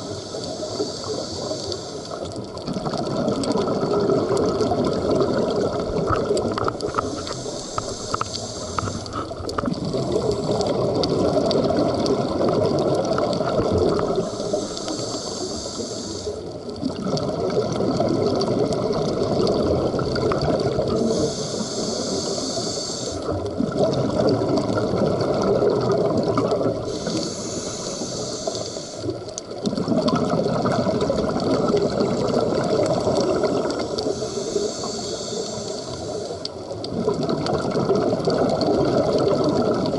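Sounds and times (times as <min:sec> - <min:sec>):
regulator inhalation hiss: 0:00.0 - 0:02.3, 0:06.8 - 0:09.2, 0:14.0 - 0:16.6, 0:20.8 - 0:23.4, 0:26.8 - 0:29.3, 0:33.1 - 0:36.6
exhaled bubbles rushing: 0:02.3 - 0:15.0, 0:16.4 - 0:22.2, 0:23.2 - 0:27.4, 0:29.1 - 0:34.2, 0:36.5 - 0:39.9.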